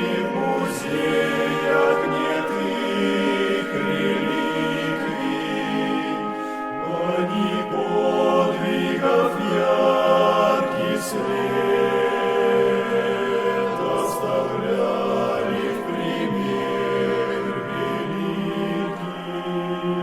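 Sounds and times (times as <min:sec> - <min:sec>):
choir singing a hymn: 0:00.0 - 0:20.0.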